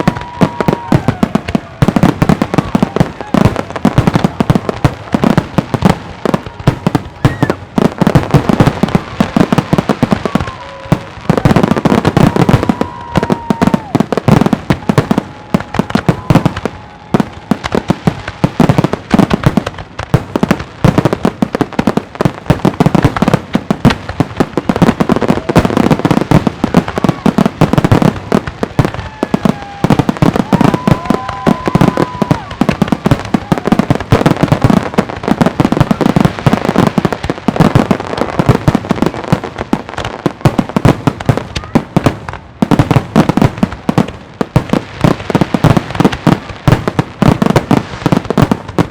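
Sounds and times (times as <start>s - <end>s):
firework whistle: 0.0s - 4.8s, 7.2s - 7.8s, 10.1s - 18.7s, 28.8s - 34.8s.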